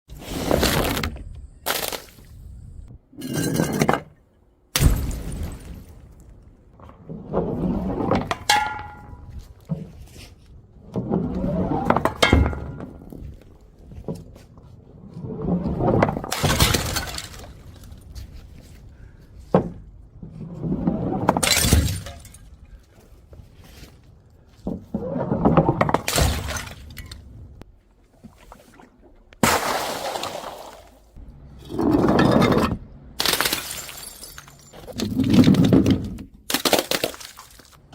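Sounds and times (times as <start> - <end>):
glass bottles shattering on stairs: 16.3 - 17.6, 21.4 - 22.5, 32.2 - 35.8.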